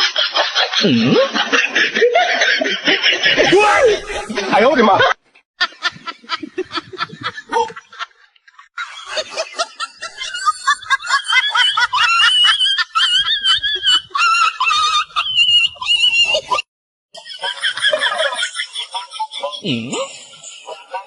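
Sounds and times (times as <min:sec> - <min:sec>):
high-pitched wavering laughter: 0:00.0 - 0:04.5, 0:08.8 - 0:21.0
snickering: 0:00.0 - 0:04.6, 0:05.7 - 0:08.2, 0:08.8 - 0:16.6, 0:17.2 - 0:21.0.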